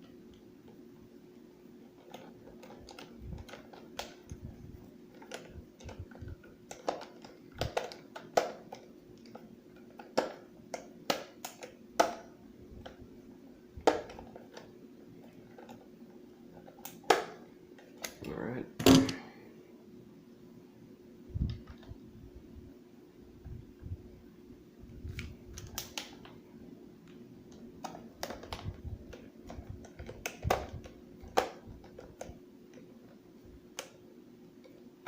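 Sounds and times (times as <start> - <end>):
faint steady hum: 0.0 - 35.0
screwdriver clicking on plastic: 2.0 - 4.4, 5.1 - 12.2.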